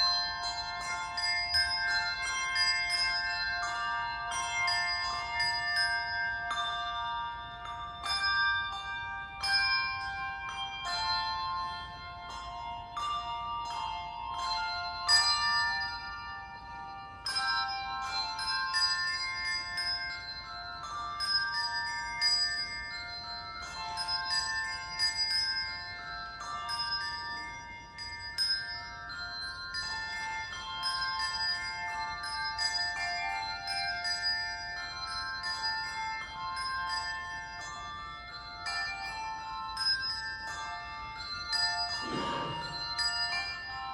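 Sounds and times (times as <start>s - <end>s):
handbell choir playing: 0.0s - 43.9s.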